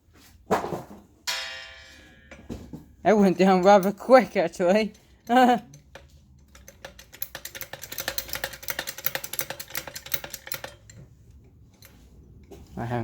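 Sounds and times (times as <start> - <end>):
ratchet clicking: 4.9 - 11.0.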